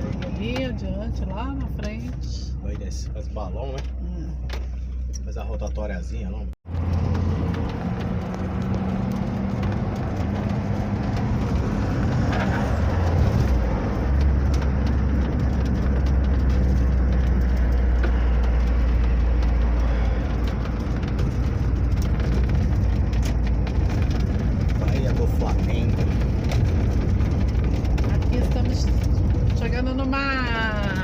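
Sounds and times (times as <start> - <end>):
road noise: 0.0 - 31.0
van engine hum: 0.0 - 31.0.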